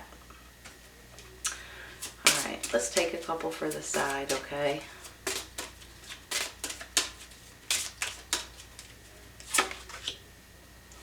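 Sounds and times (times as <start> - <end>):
cards snapping and tapping: 5.0 - 10.2.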